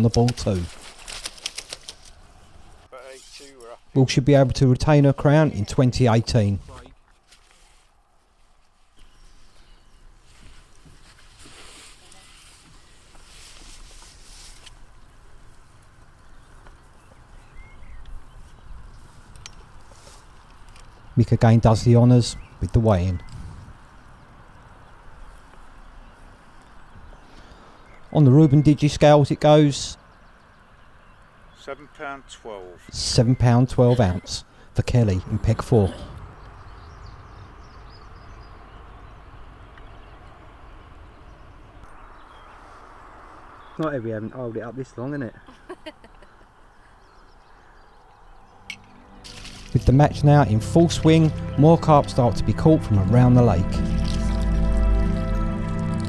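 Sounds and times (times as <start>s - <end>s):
small clicks: 0.1s - 2.2s
faint bird chirps: 14.9s - 19.3s
wind rumble on microphone: 23.2s - 26.2s.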